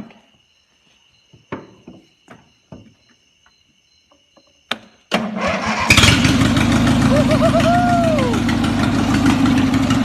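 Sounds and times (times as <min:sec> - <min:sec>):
mower engine cranking on starter: 0:05.1 - 0:07.1.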